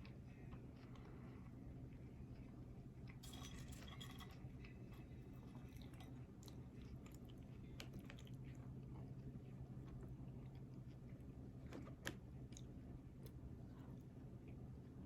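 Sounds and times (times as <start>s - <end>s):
person chewing food: 4.4s - 14.6s.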